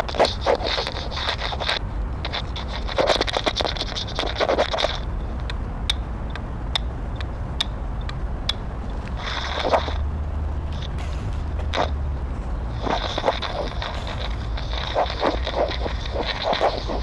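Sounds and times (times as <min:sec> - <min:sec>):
probe scraping sculpture surface: 0:00.0 - 0:05.1, 0:09.1 - 0:10.0, 0:10.6 - 0:17.0
sharp ticks: 0:00.0 - 0:10.0, 0:12.8 - 0:17.0
steady low hum: 0:00.0 - 0:17.0.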